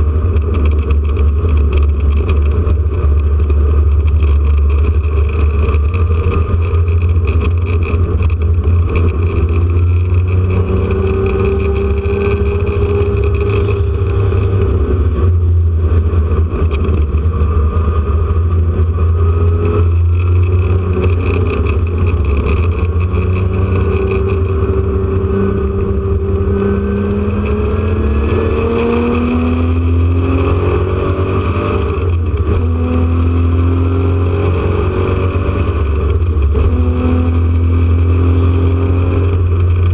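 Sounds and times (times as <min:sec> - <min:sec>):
car engine accelerating: 0:00.0 - 0:39.9.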